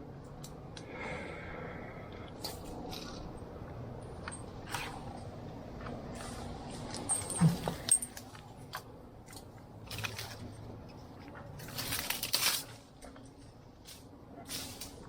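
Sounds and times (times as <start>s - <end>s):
climbing gear clinking: 6.7s - 10.6s
branches and leaves rustling: 9.8s - 15.0s.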